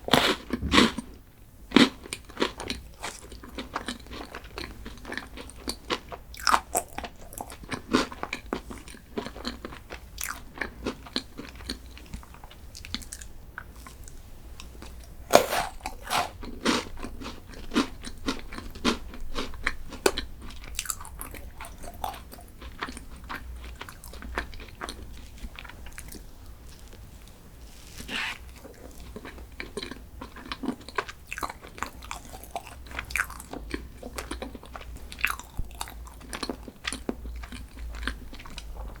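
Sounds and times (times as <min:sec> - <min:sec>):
crunchy bites: 0:00.1 - 0:01.0, 0:15.2 - 0:17.3
chewing: 0:14.8 - 0:25.0, 0:28.0 - 0:39.0.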